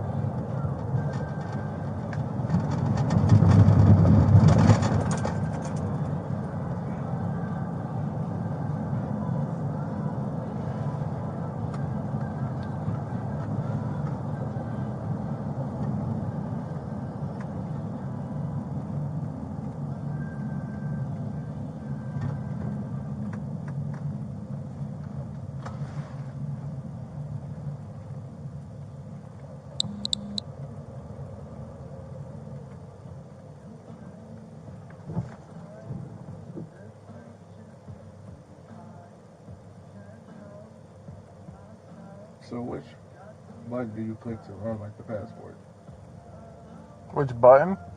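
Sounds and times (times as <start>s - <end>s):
car road and engine noise: 0.0s - 47.9s
quick high beeps: 29.8s - 30.4s.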